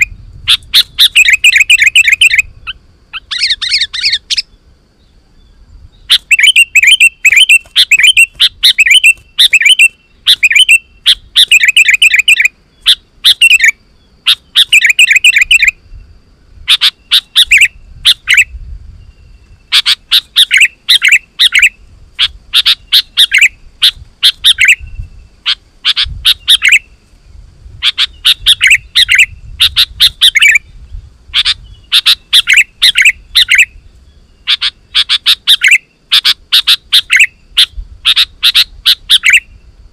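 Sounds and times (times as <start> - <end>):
bulbul singing chattering notes: 0.0 - 4.5, 6.0 - 13.7, 14.3 - 15.7.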